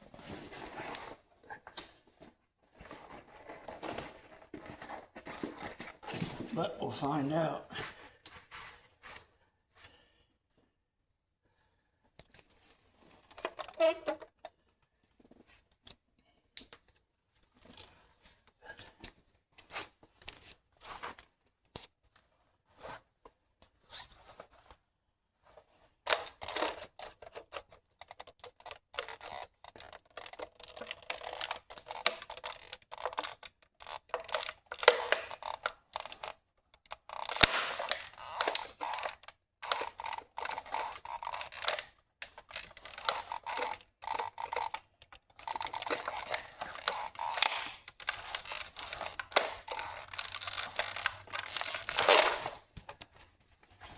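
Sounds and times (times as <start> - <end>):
plastic toy car creaking and crackling: 0.2 - 7.6, 12.4 - 14.6, 25.6 - 53.9.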